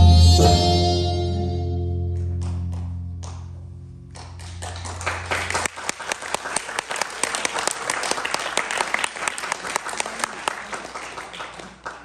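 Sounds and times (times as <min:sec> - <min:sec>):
tango music low note: 0:00.0 - 0:05.6
audience applause: 0:04.2 - 0:12.0.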